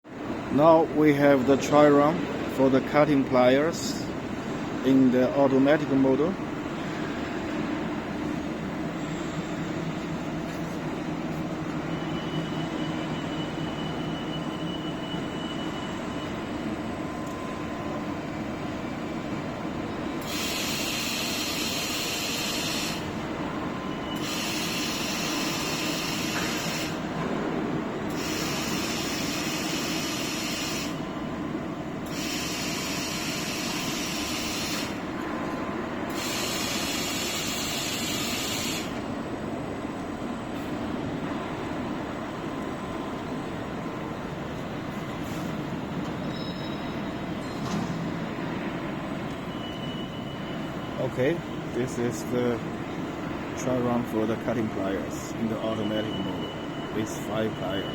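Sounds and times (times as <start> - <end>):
machine hiss: 20.2 - 23.1, 24.2 - 27.0, 28.1 - 31.0, 32.0 - 35.0, 36.1 - 39.0.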